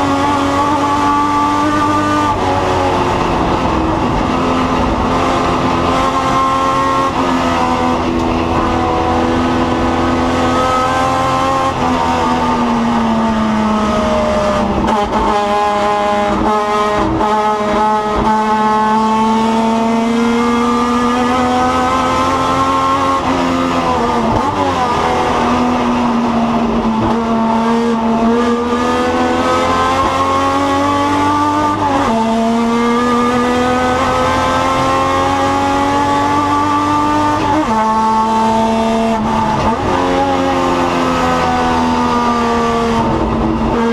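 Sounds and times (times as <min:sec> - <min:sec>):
race car engine revving: 0:00.0 - 0:43.9.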